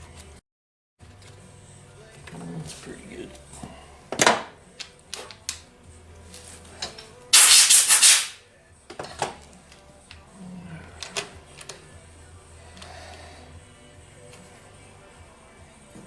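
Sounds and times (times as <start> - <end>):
loud hissing burst: 7.4 - 8.4.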